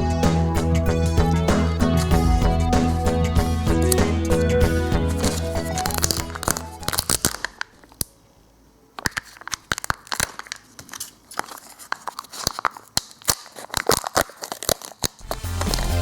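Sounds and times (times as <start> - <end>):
wrapper crinkling and tearing: 5.3 - 8.1, 9.0 - 16.0.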